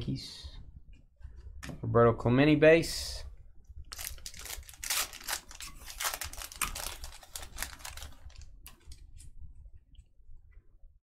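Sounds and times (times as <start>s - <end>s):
cards and wrapper crinkling: 3.9s - 9.3s.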